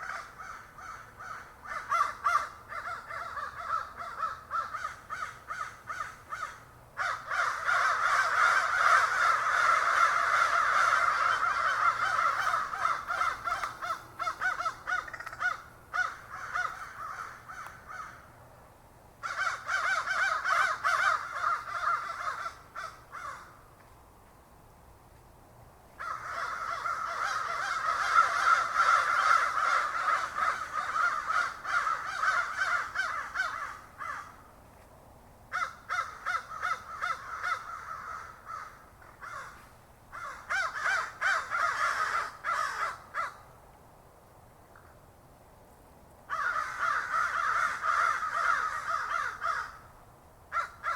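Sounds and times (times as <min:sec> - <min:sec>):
crows cawing: 0:00.0 - 0:18.4, 0:19.2 - 0:23.6, 0:26.0 - 0:34.5, 0:35.5 - 0:43.5, 0:46.3 - 0:49.9, 0:50.5 - 0:50.9.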